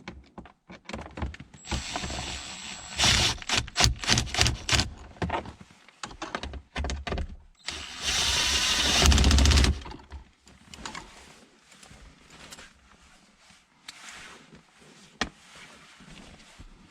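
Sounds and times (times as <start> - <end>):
impact gun driving bolt: 1.7 - 5.0, 7.7 - 9.8.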